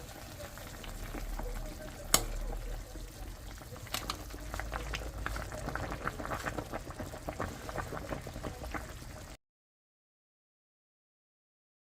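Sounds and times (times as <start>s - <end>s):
soup bubbles popping: 0.0s - 9.4s.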